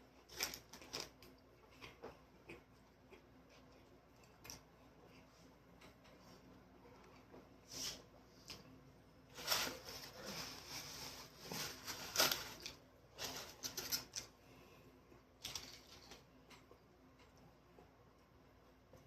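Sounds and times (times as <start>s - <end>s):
crunching and chewing: 0.0s - 6.2s.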